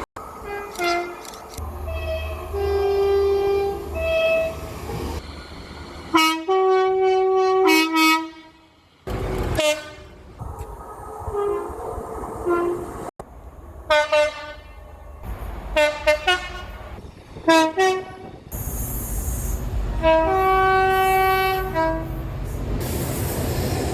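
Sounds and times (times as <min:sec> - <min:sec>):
two-tone locomotive horn: 0:00.4 - 0:04.7, 0:06.1 - 0:10.2, 0:12.4 - 0:13.0, 0:13.9 - 0:14.9, 0:15.7 - 0:18.4, 0:19.9 - 0:22.3.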